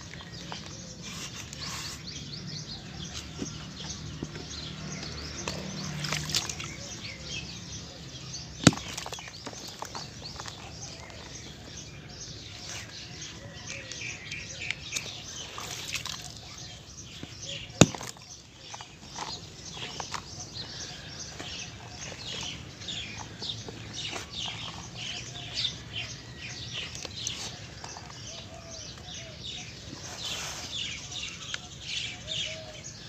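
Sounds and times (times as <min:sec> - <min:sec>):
small birds chirping: 0:00.0 - 0:33.0
cement chunks smashing: 0:08.6 - 0:10.7, 0:17.7 - 0:18.3.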